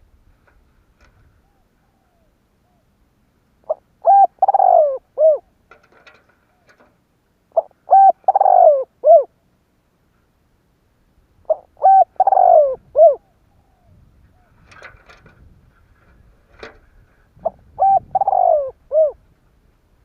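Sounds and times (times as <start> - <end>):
dove cooing: 3.6 - 5.5, 6.4 - 9.4, 11.4 - 14.9, 17.4 - 19.3.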